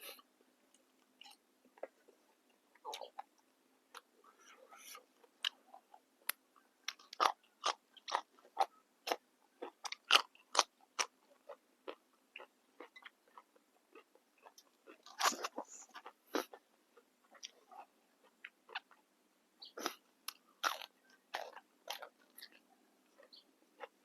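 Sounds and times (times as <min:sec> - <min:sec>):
person crunching crisp vegetables: 0:04.7 - 0:16.6, 0:19.7 - 0:24.0.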